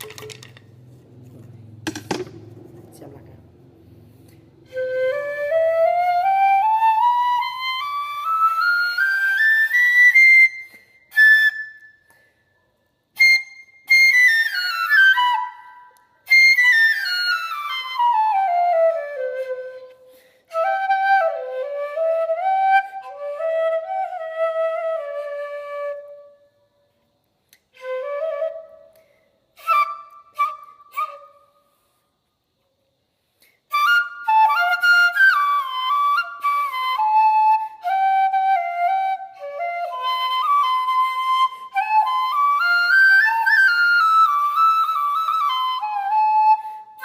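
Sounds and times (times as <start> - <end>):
bamboo flute playing: 4.4 - 26.7, 27.7 - 32.0, 33.5 - 47.0.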